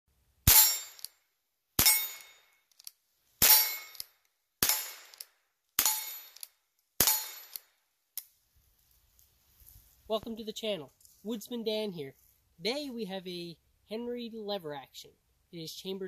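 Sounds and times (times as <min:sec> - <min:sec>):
metallic ring: 0:00.5 - 0:01.2, 0:01.8 - 0:02.6, 0:03.4 - 0:05.2, 0:05.8 - 0:07.7
rifle shots: 0:04.6 - 0:05.2, 0:07.0 - 0:07.6.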